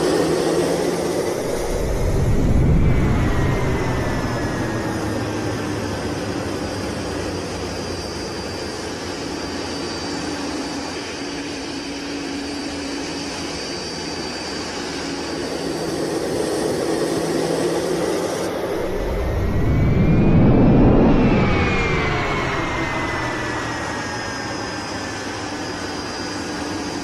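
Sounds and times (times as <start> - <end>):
jet engines whining: 0.0 - 27.0.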